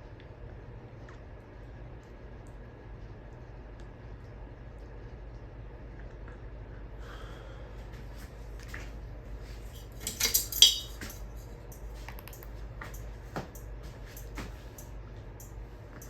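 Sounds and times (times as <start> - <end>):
ceiling fan humming: 0.0 - 16.0
clinking and clattering: 9.8 - 11.3.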